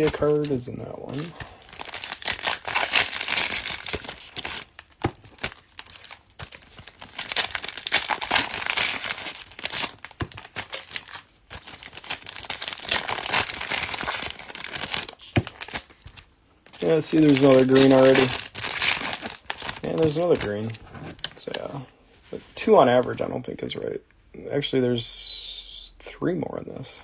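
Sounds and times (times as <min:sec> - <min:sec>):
foil wrappers crinkling: 0:00.0 - 0:20.8.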